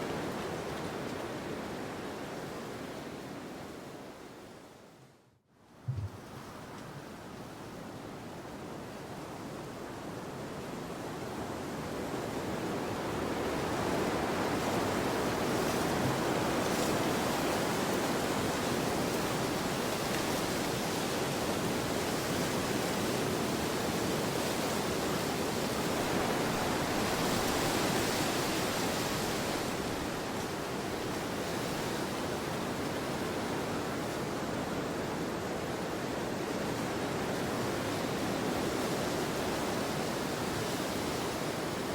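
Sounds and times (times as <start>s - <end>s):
wind blowing: 5.9s - 6.8s.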